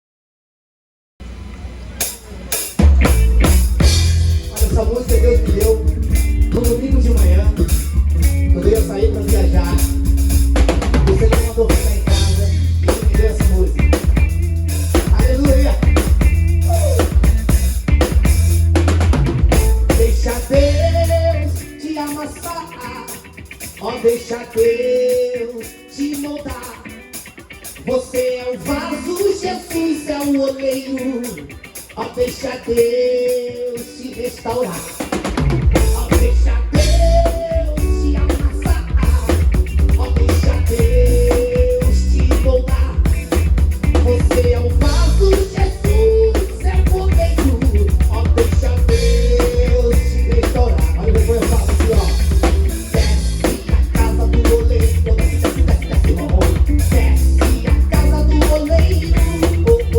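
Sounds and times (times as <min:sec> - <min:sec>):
live band playing worship song: 0:02.0 - 0:59.9
drum kit hits: 0:02.7 - 0:21.1
electric bass low notes: 0:02.8 - 0:22.6, 0:35.3 - 0:59.9.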